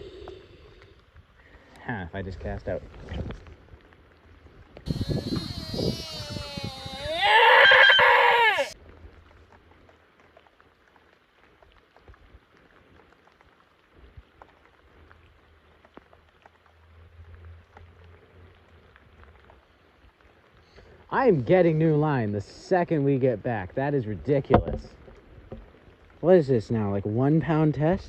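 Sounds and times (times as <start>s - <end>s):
faint rain pattering: 0.0s - 4.9s, 7.2s - 28.0s
man crying out in frustration: 4.9s - 8.8s.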